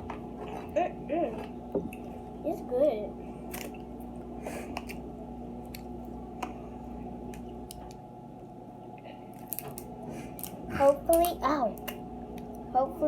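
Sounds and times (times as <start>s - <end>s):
low hum: 0.0s - 13.0s
crab legs cracking and squishing: 3.5s - 5.0s, 5.6s - 6.2s, 9.3s - 12.6s.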